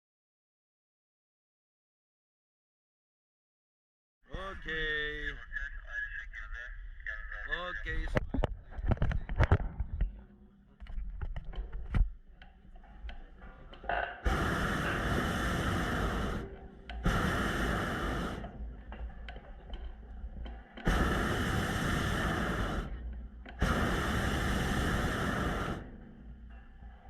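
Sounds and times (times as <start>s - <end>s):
propane burner hissing blasts: 14.2s - 27.0s.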